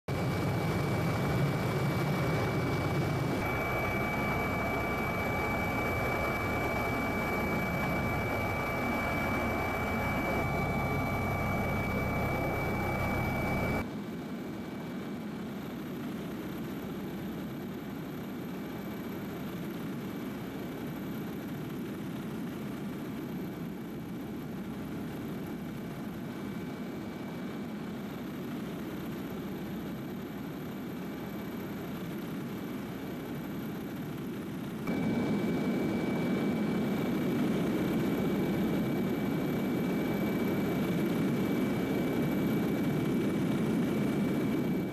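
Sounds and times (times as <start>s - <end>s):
mechanical drone: 0.1s - 13.8s, 34.8s - 38.0s.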